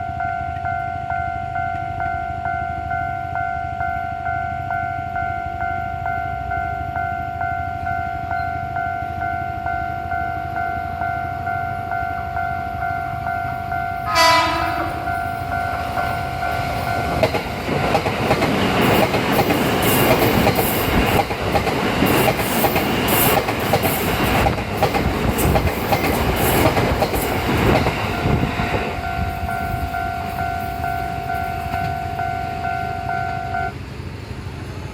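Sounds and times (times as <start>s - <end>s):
level crossing warning signal: 0.0s - 20.7s, 27.8s - 33.8s
train wheels beating on rail: 13.1s - 34.9s
train air horn blast: 14.0s - 16.2s.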